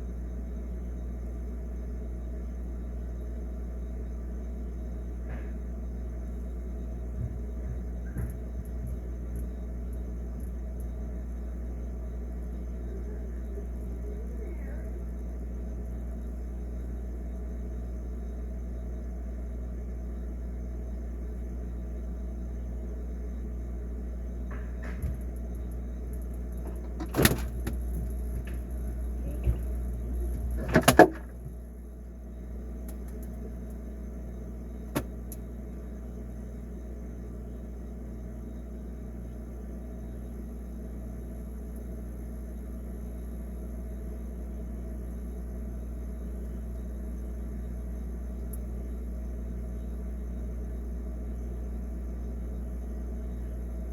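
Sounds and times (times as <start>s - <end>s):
refrigerator hum: 0.0s - 53.9s
sharp knocks and clunks: 7.1s - 9.1s, 24.5s - 25.3s, 26.6s - 31.6s, 34.9s - 35.1s.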